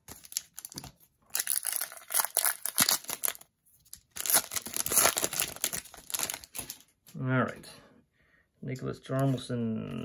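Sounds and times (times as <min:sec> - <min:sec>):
card pack wrapper tearing and crinkling: 0:00.0 - 0:06.9.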